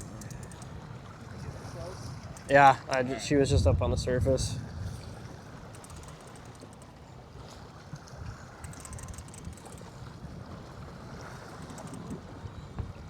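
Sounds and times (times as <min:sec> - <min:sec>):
faint high clicks: 0:00.0 - 0:00.8, 0:05.7 - 0:06.9, 0:07.9 - 0:09.9, 0:11.6 - 0:12.2
wind buffeting microphone: 0:00.0 - 0:06.2, 0:07.4 - 0:13.0
waves washing against boat: 0:00.0 - 0:13.0.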